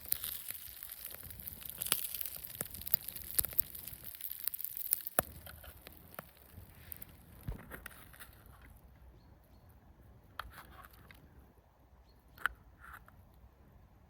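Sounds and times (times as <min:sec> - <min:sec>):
sharp crackles and snaps: 0:00.0 - 0:08.8.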